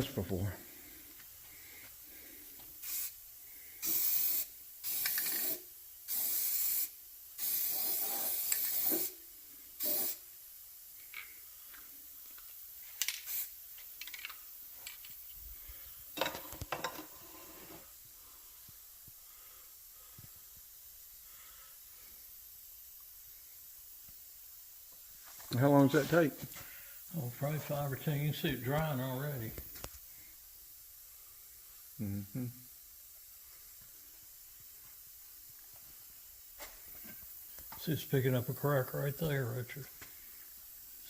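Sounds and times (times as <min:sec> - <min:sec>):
aerosol spray hissing: 0:02.3 - 0:13.8.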